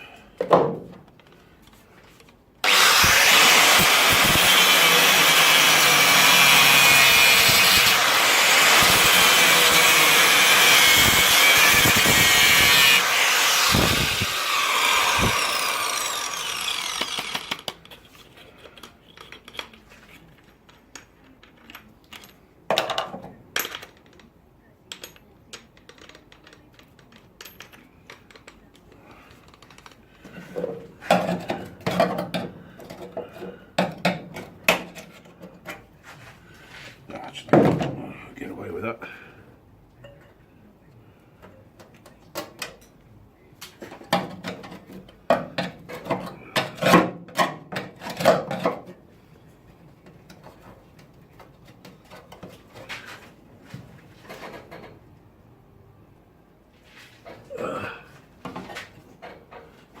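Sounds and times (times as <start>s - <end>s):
angle grinder grinding steel: 2.6s - 17.7s.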